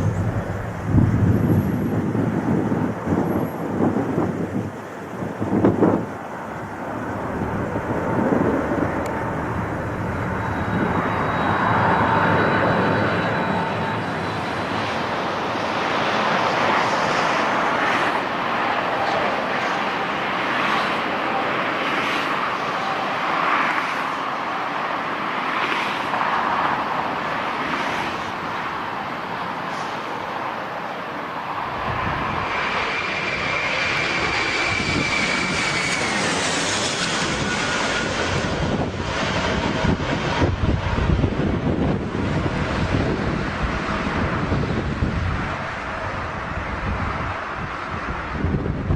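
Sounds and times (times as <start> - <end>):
aircraft engines running: 0.0 - 48.9
thin high whine: 6.4 - 15.6.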